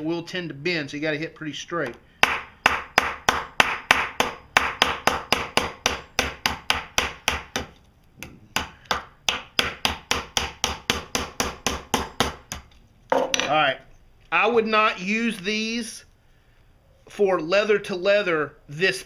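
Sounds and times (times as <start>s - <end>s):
hammer tapping on nail: 2.2s - 7.8s, 8.6s - 12.7s.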